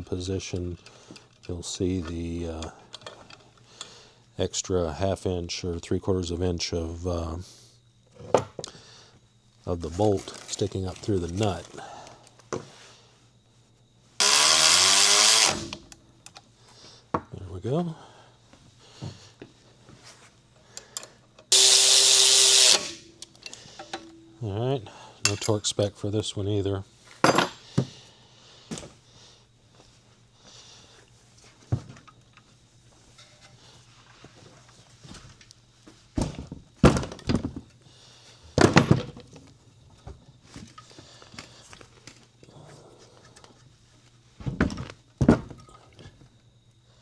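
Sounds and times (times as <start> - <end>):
power tool running: 14.2 - 16.0, 21.5 - 24.0
faint low hum: 23.0 - 47.0
metal tools knocking and clunking: 27.2 - 27.6.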